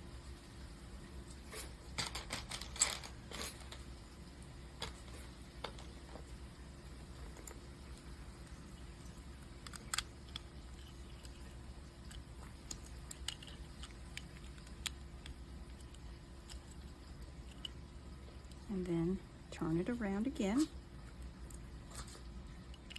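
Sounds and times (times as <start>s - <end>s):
faint steady hum: 0.0s - 22.9s
plastic pieces clicking and snapping: 9.6s - 17.8s, 22.7s - 22.9s.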